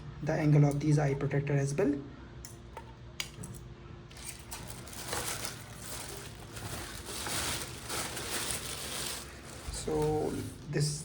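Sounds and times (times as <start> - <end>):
packaging rustling: 4.1 - 10.7.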